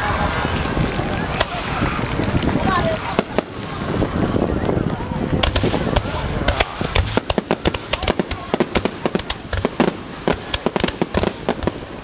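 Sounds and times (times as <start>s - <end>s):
fireworks crackling and banging: 0.0s - 12.0s.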